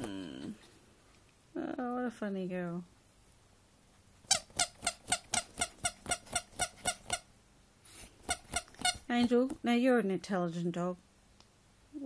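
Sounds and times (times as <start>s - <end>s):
squeaky dog toy squeaking: 4.2s - 7.3s, 8.2s - 9.1s.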